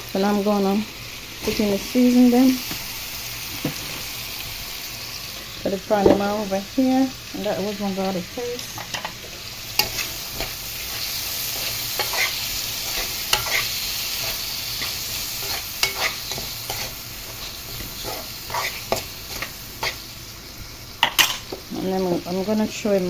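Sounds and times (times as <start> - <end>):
vegetables sizzling in oil: 0.0 - 23.0
utensil scraping a pan: 9.8 - 20.0.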